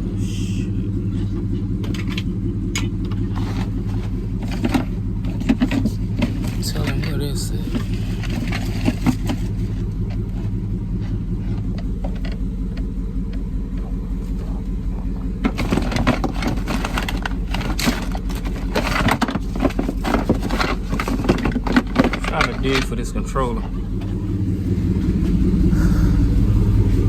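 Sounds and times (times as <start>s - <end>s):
car engine idling: 0.0s - 27.0s
rummaging clicks and rustling: 1.2s - 25.4s.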